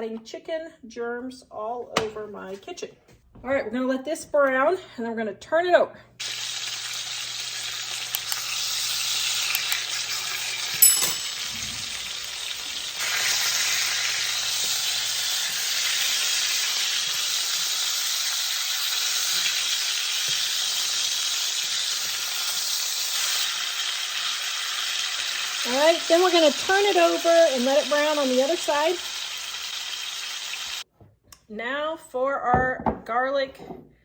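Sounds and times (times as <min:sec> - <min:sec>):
chicken sizzling in a frying pan: 0:06.2 - 0:30.8.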